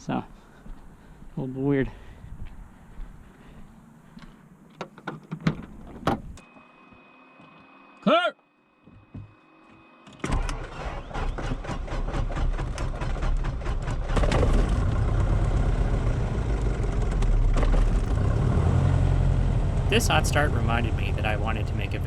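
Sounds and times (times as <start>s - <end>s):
aircraft engine running: 19.9s - 22.0s.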